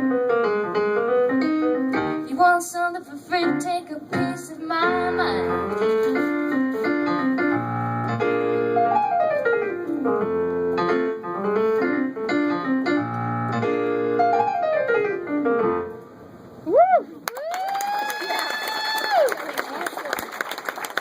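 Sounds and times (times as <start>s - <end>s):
piano chords: 0.0s - 16.6s
loud rising whoop: 16.6s - 19.4s.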